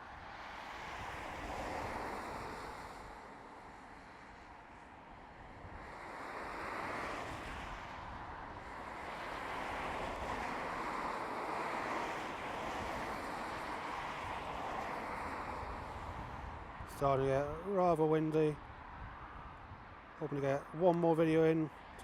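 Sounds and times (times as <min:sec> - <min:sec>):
wind gusting: 0:08.6 - 0:21.7.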